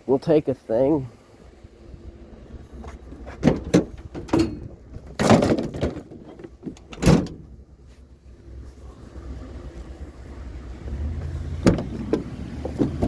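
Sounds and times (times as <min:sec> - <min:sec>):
knocks and clatters of handled object: 0:02.8 - 0:07.3.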